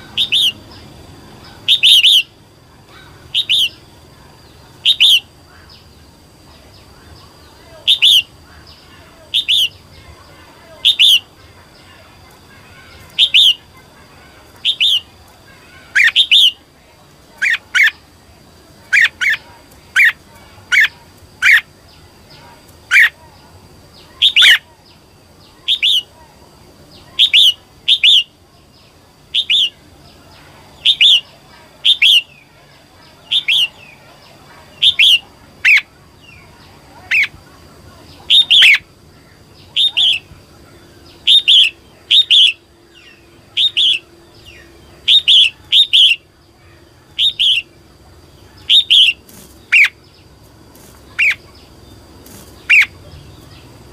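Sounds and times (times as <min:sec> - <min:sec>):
bulbul short sharp calls: 0:00.0 - 0:00.8, 0:01.4 - 0:03.9, 0:04.5 - 0:05.8, 0:07.6 - 0:10.0, 0:10.7 - 0:11.4, 0:12.5 - 0:13.8, 0:14.5 - 0:16.7, 0:17.4 - 0:18.0, 0:18.9 - 0:21.7, 0:22.9 - 0:23.2, 0:24.2 - 0:24.7, 0:25.6 - 0:26.2, 0:27.1 - 0:28.4, 0:29.3 - 0:29.8, 0:30.4 - 0:32.5, 0:34.7 - 0:37.4, 0:38.1 - 0:40.3, 0:40.9 - 0:47.8, 0:48.4 - 0:53.8.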